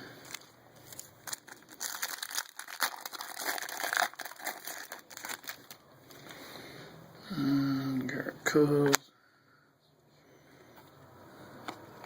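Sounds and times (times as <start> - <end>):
foil wrapper crinkling and tearing: 0.2 - 6.2.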